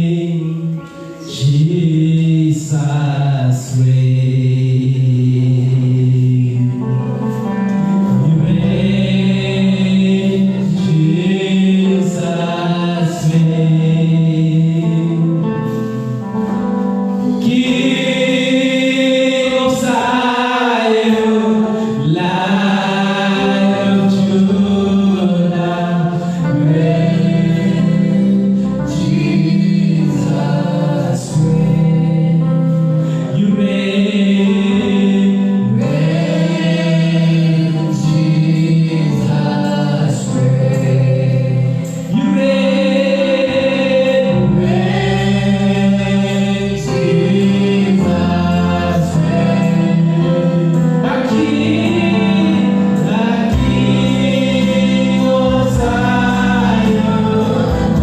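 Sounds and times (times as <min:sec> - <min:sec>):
group singing gospel song: 0:00.0 - 0:58.0
held low instrumental chords: 0:00.0 - 0:58.0.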